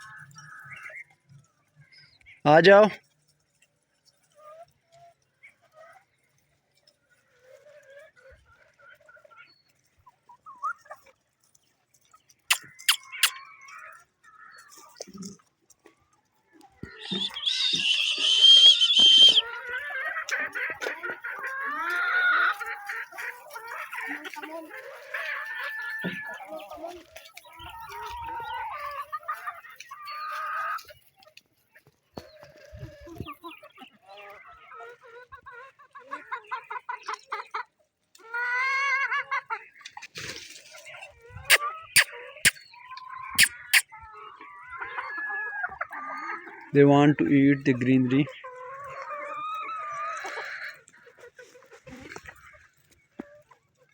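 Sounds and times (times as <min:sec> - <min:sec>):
hens clucking: 0:04.1 - 0:40.1, 0:40.7 - 0:53.9
hen drawn-out wavering call: 0:12.5 - 0:13.4, 0:16.9 - 0:19.5, 0:41.5 - 0:42.6, 0:43.4 - 0:43.9.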